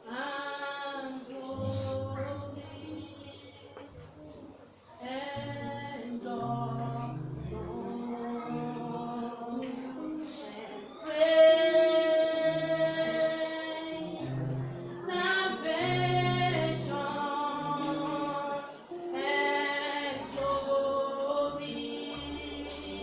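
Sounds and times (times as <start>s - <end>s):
choir singing: 5.0s - 23.0s.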